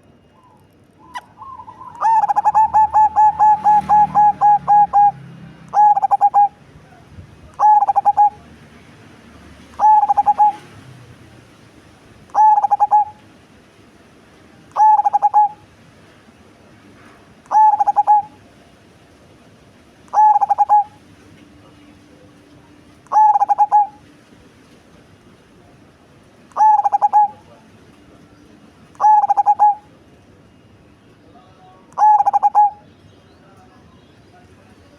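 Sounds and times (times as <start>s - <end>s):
dove cooing deeply: 0.4s - 6.6s, 7.5s - 8.4s, 9.7s - 10.8s, 12.3s - 13.2s, 14.7s - 15.7s, 17.5s - 18.4s, 20.1s - 21.0s, 23.1s - 24.0s, 26.5s - 27.5s, 28.9s - 29.9s, 31.9s - 32.8s.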